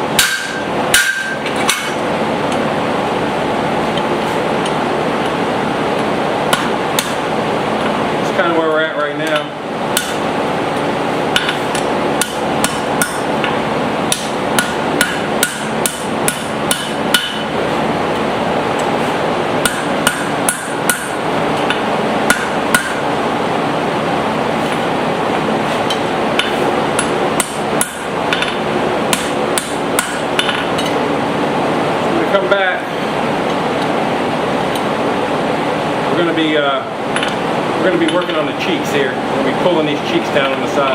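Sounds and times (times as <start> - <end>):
steady background hum: 0.0 - 40.9
hammer striking hot steel: 0.1 - 2.1, 6.5 - 7.9, 9.2 - 10.3, 11.3 - 17.6, 19.6 - 23.1, 25.8 - 31.0.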